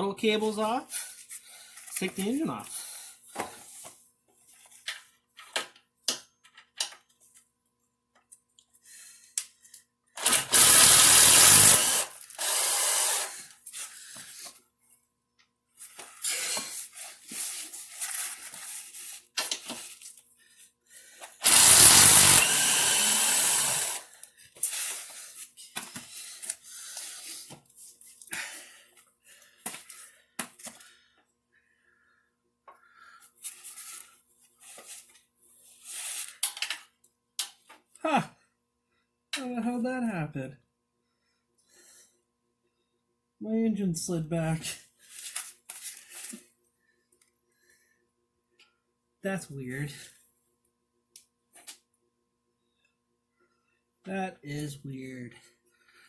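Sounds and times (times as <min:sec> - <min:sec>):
power tool spinning socket: 0:10.2 - 0:13.4, 0:21.4 - 0:24.1.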